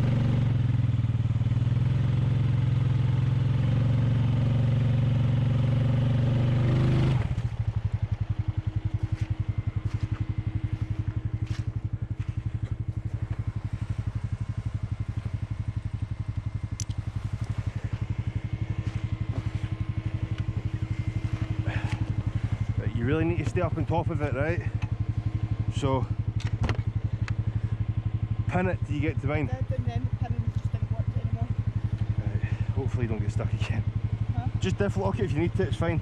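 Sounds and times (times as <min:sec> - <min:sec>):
atv engine revving and idling: 0:00.0 - 0:36.0.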